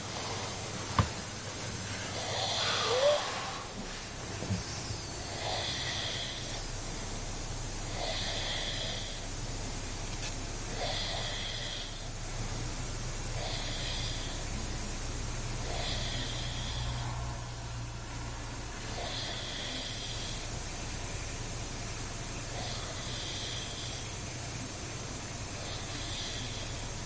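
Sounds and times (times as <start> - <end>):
man snoring through nose: 2.1 - 3.8, 4.9 - 7.1, 7.8 - 9.3, 10.6 - 12.2, 13.2 - 21.0, 22.4 - 24.3, 25.4 - 27.0.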